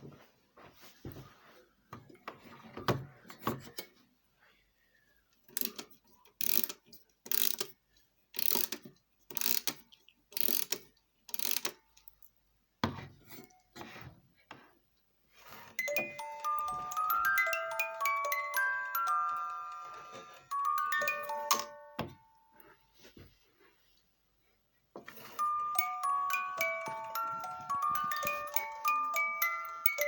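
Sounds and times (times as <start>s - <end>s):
clockwork ratchet clicking: 5.5s - 7.7s, 8.4s - 9.8s, 10.4s - 11.8s.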